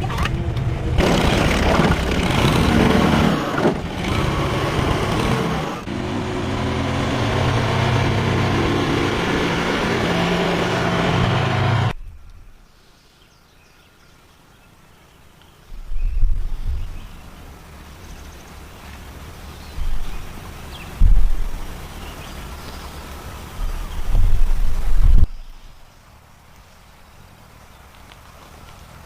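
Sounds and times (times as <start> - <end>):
motor running: 1.0 - 11.9.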